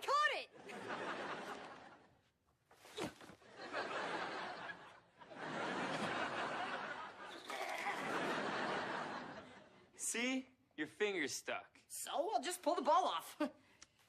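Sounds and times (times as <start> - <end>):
studio audience laughter: 0.6 - 2.2, 3.5 - 9.9.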